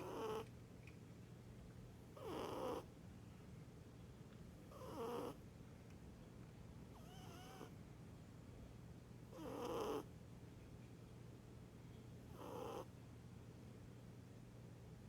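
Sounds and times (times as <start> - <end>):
cat snoring: 0.0 - 0.4, 2.2 - 2.9, 4.7 - 5.4, 7.0 - 7.7, 9.3 - 10.1, 12.3 - 12.9.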